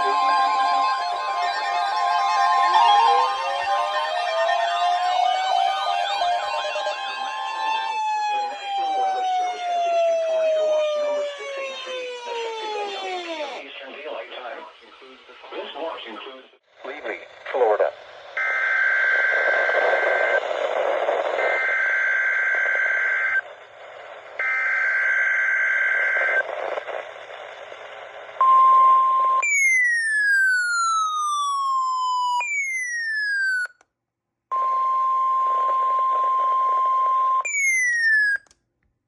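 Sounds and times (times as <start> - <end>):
radio hiss: 13.0 - 21.7, 23.4 - 24.4, 26.2 - 28.4.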